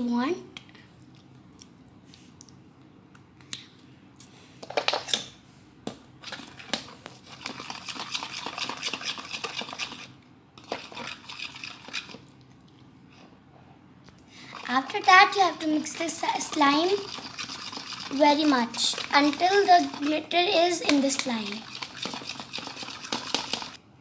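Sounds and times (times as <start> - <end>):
fork scraping a bowl: 7.3 - 12.2, 17.0 - 18.2, 21.6 - 23.8.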